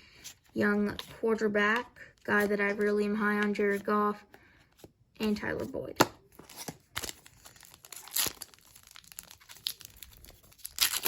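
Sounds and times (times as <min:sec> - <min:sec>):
plastic wrapper crinkling: 0:06.4 - 0:11.0
plastic wrapper ripping: 0:06.5 - 0:11.0.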